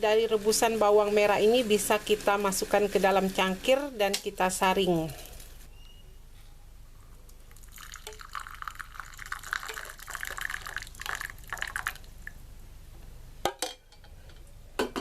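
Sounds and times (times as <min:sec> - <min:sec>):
liquid pouring through strainer: 0:07.5 - 0:12.4.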